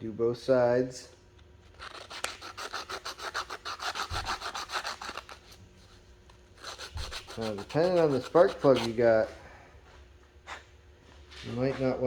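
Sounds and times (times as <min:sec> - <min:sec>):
sandpaper scraping metal: 0:01.8 - 0:05.5, 0:06.6 - 0:09.0.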